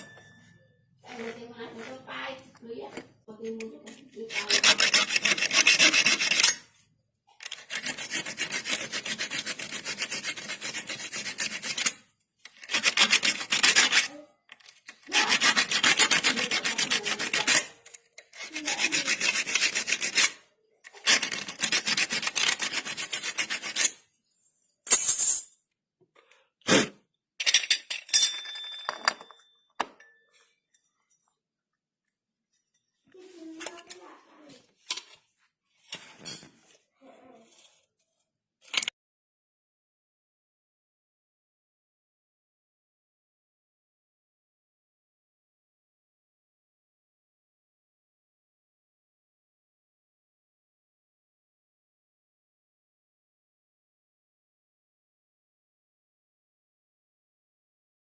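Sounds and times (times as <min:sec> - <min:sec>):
hacksaw rasping on metal: 0:04.3 - 0:06.7, 0:07.4 - 0:14.1, 0:15.0 - 0:24.0
scrapes and clicks: 0:38.6 - 0:38.9.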